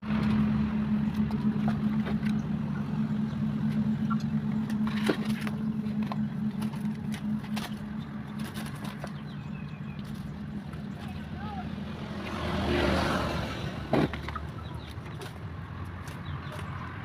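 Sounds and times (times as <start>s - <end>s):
motorcycle engine idling: 0.0s - 12.0s.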